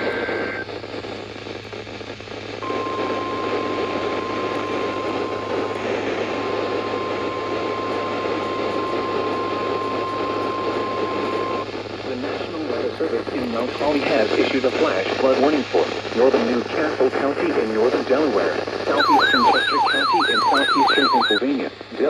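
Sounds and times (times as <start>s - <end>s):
radio hiss with low hum: 0.0s - 22.0s
steady alert tone: 19.0s - 21.4s.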